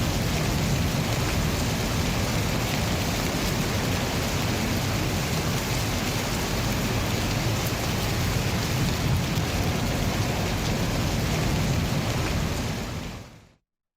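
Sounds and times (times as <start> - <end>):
heavy rainfall: 0.0 - 13.6.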